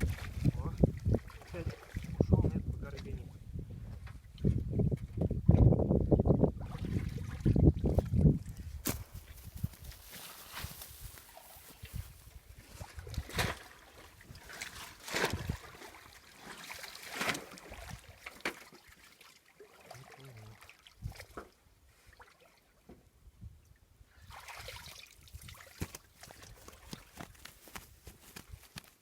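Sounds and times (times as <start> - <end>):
shallow water sloshing and splashing: 0.0 - 2.2, 6.6 - 22.7, 24.2 - 27.7.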